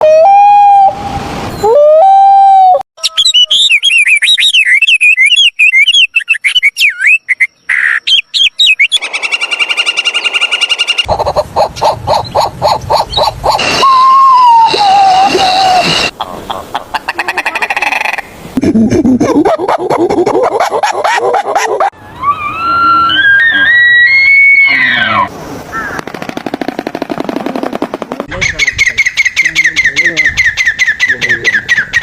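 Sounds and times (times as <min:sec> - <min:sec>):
songbird warbling chirps: 0:03.0 - 0:11.1
long held animal calls: 0:11.0 - 0:18.2, 0:22.0 - 0:25.9.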